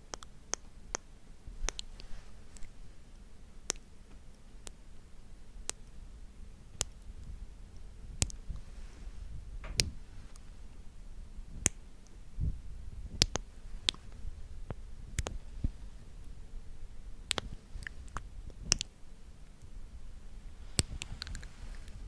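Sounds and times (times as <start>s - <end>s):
faint low rumble: 0.0s - 22.0s
sharp asmr clicks: 0.1s - 3.9s, 6.8s - 7.3s, 11.6s - 15.4s, 17.2s - 19.0s, 20.8s - 22.0s.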